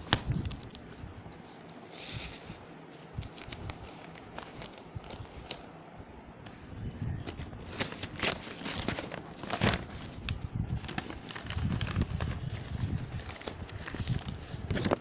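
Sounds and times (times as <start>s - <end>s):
packaging scraping or tearing: 7.3s - 15.0s.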